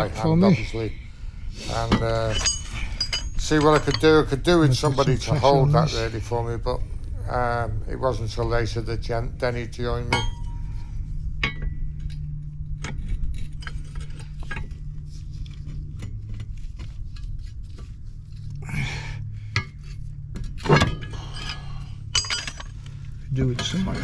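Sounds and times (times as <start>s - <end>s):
steady low hum: 0.0s - 24.0s
metallic clinks of tools: 1.7s - 5.1s, 20.7s - 22.7s.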